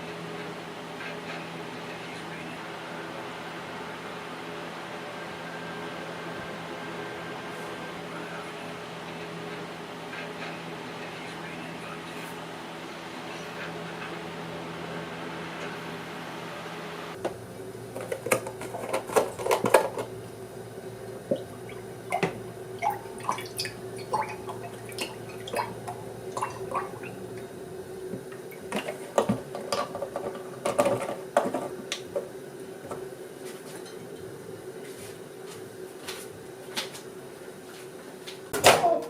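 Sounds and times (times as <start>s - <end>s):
steady hum: 0.0s - 39.0s.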